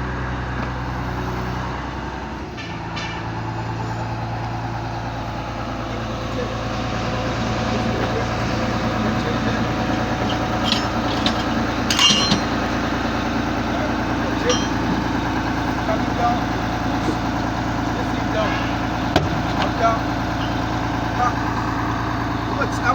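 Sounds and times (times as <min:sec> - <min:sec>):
heavy vehicle engine running: 0:00.0 - 0:22.9.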